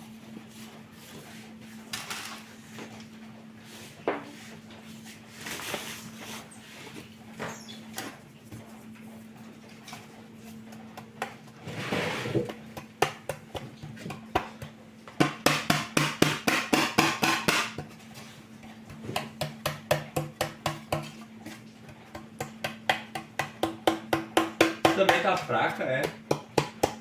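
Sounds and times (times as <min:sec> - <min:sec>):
steady low hum: 0:00.0 - 0:27.0
utensil knocking against bowl: 0:12.4 - 0:17.9, 0:18.9 - 0:21.2, 0:21.9 - 0:27.0.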